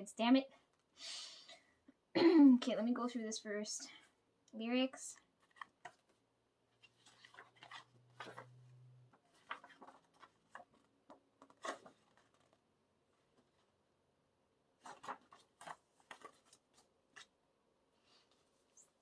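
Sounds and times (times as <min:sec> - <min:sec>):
paper rustling and tapping: 0:05.4 - 0:06.2, 0:06.8 - 0:12.6, 0:14.8 - 0:17.4.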